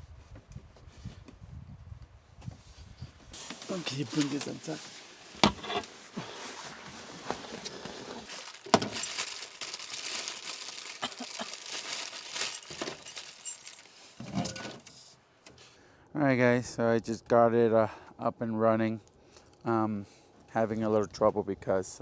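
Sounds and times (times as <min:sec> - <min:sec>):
crinkling rustle: 0:03.4 - 0:15.1.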